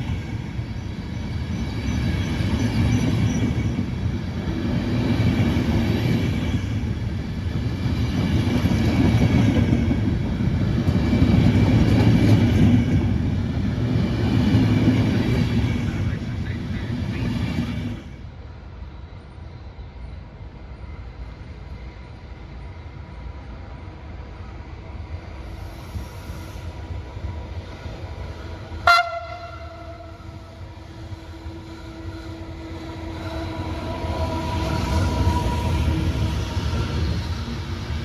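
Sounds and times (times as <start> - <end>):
train rumbling on tracks: 0.0 - 38.0
sharp train horn toot: 28.8 - 36.8.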